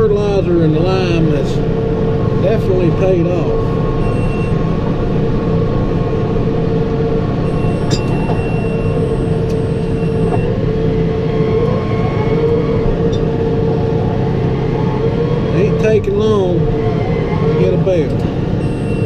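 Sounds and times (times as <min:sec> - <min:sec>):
steady whine: 0:00.0 - 0:19.0
tractor engine running: 0:00.0 - 0:19.0.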